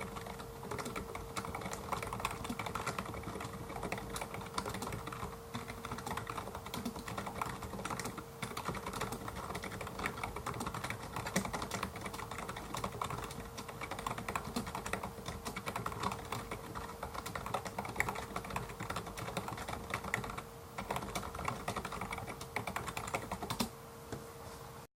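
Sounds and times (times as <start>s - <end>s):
clicky keyboard typing: 0.0s - 23.7s.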